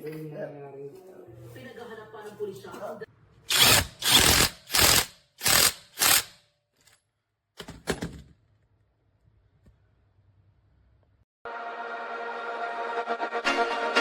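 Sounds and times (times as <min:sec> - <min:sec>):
impact wrench hammering: 0:03.5 - 0:06.4.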